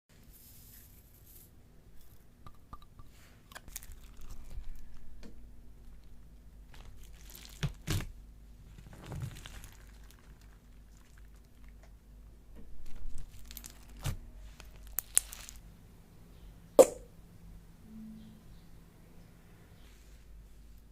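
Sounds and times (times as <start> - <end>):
slime crunching and crackling: 3.5 - 5.0, 5.8 - 12.0, 12.8 - 15.6
slime snapping pops: 16.8 - 17.0.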